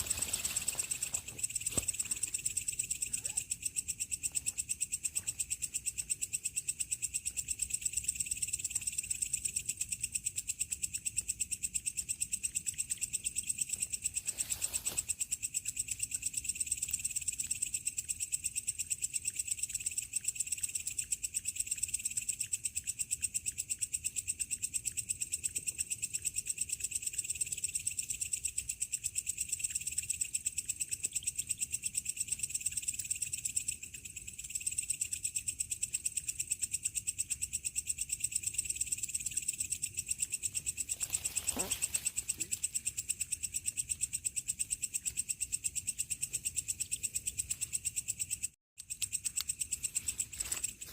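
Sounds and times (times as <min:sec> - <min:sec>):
crickets chirring: 0:00.0 - 0:50.9.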